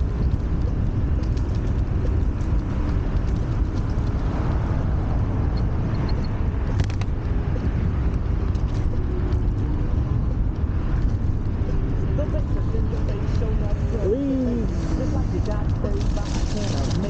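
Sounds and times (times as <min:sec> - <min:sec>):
sharp clicks: 0:00.0 - 0:09.8
wind and road noise: 0:00.0 - 0:17.0.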